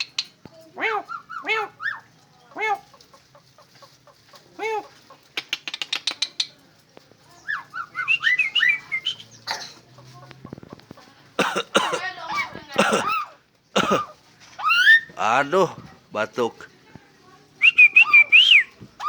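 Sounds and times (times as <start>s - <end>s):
bird clicks: 0.0s - 0.4s, 5.3s - 6.6s
starling calls: 0.0s - 6.6s, 7.3s - 16.8s, 17.5s - 19.0s
chattering whistled notes: 7.6s - 9.4s, 17.6s - 18.8s.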